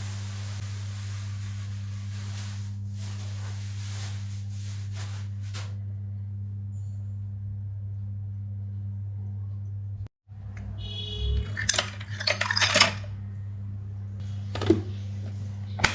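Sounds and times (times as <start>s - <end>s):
hiss: 0.0s - 5.8s
steady low hum: 0.0s - 15.9s.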